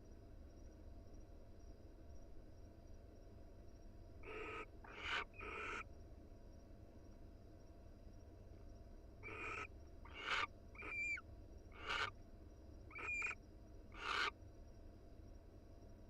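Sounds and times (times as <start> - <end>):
owl chirruping calls: 4.2 - 5.8, 9.2 - 12.2, 12.9 - 14.3
owl screeching: 4.2 - 5.8, 9.2 - 12.2, 12.9 - 14.4.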